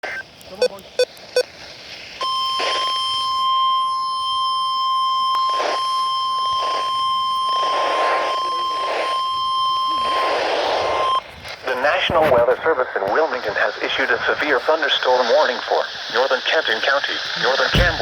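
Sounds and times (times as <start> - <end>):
static hiss: 0.0 - 18.0
steady warning alarm tone: 2.2 - 11.2, 17.7 - 18.0.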